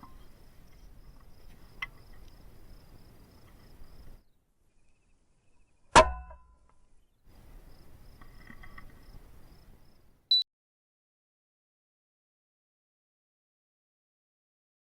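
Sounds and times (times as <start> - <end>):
crickets chirping: 0.0 - 5.8, 7.0 - 10.1.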